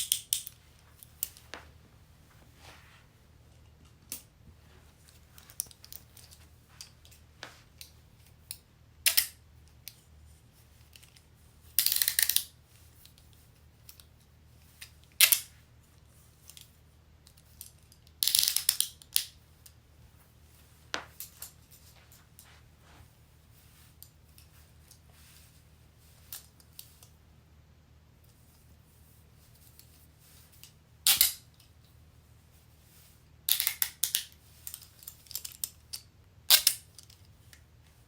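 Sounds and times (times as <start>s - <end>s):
handcuff ratcheting: 0.0s - 0.6s, 11.8s - 12.5s, 18.2s - 19.3s
handcuff clicks: 11.8s - 12.5s.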